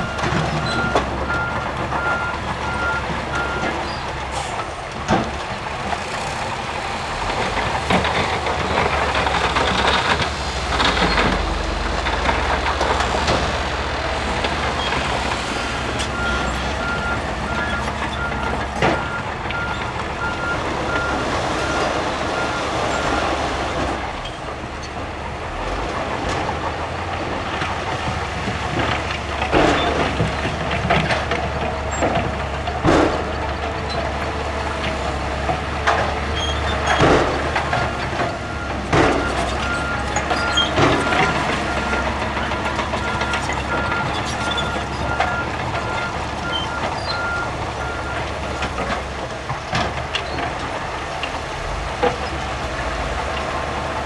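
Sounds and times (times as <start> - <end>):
diesel engine running: 0.0 - 54.0
reversing alarm beeping: 15.9 - 23.3.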